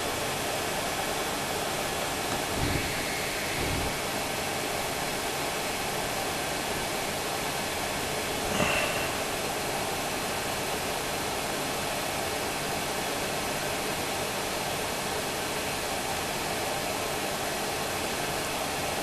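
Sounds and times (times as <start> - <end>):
hot air wand hissing: 1.8 - 10.7.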